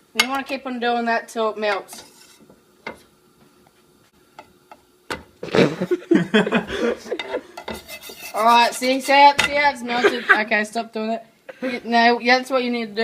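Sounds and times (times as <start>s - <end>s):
butter scraping in frying pan: 1.7s - 3.2s, 7.6s - 9.7s.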